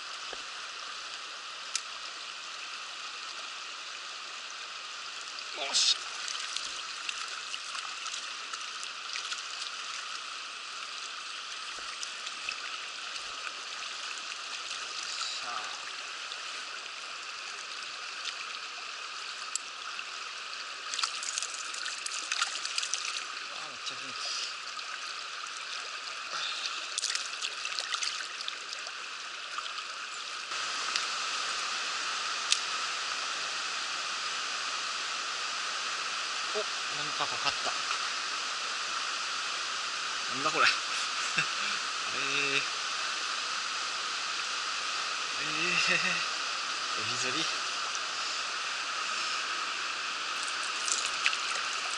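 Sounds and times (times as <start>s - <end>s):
small clicks and splashes: 1.7s - 2.0s, 6.2s - 10.2s, 18.2s - 18.6s, 19.4s - 19.8s, 20.9s - 23.3s, 26.6s - 29.9s, 50.4s - 51.9s
faint ticks: 19.5s - 19.7s
stream rushing over rocks: 20.4s - 51.9s.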